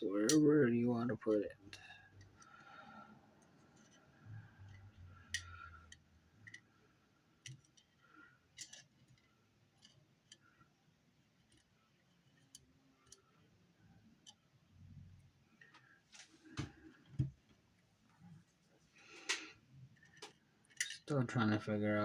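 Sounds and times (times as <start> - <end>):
faint clicks and light taps: 11.3 - 14.5.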